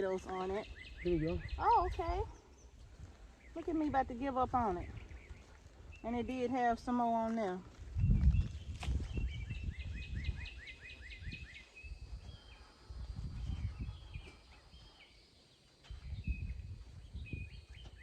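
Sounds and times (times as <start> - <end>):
bird chirping: 0.0 - 2.8, 8.0 - 12.8.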